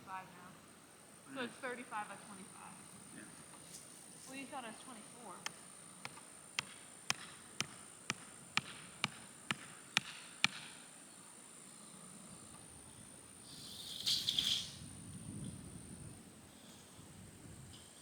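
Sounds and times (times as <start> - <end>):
brief rustle: 13.6 - 14.8.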